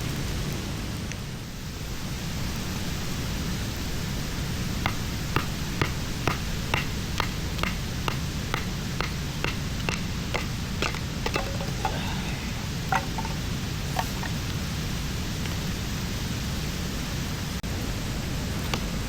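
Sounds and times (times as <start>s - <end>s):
light knocks: 4.8s - 14.4s.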